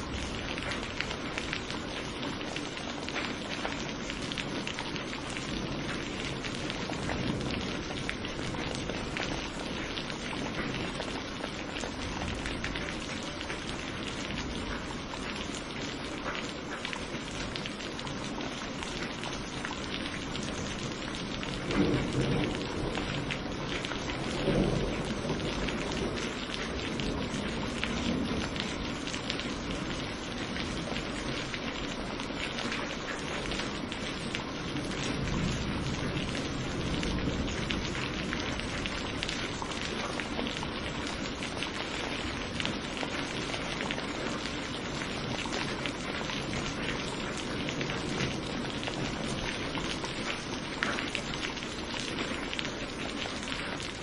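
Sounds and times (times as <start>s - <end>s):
heavy rain falling: 0.0s - 54.0s
thunder rumbling: 20.5s - 29.9s, 34.6s - 40.9s.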